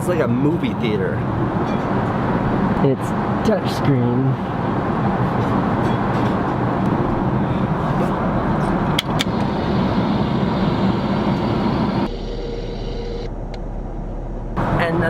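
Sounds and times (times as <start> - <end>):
airliner cabin roar: 4.4 - 15.0
low hum: 6.8 - 15.0.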